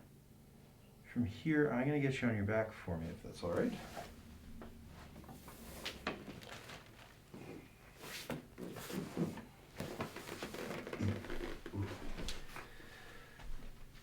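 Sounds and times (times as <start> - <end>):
rustling on padded table: 3.5 - 12.7
table creaking: 8.1 - 12.4.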